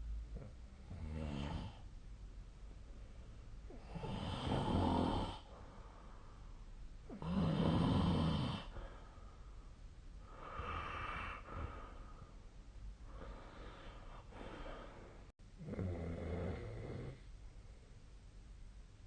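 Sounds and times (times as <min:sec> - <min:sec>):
person snoring: 0:00.9 - 0:01.8, 0:03.7 - 0:05.5, 0:07.1 - 0:08.8, 0:10.3 - 0:12.0, 0:15.6 - 0:17.2.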